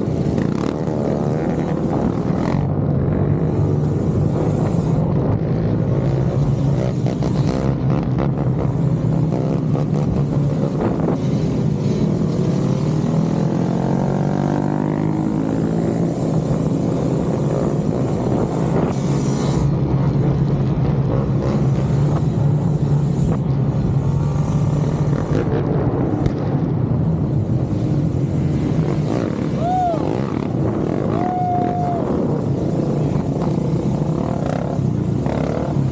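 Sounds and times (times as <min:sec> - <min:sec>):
motorcycle engine running: 0:00.0 - 0:35.9
motorcycle revving: 0:00.0 - 0:35.9.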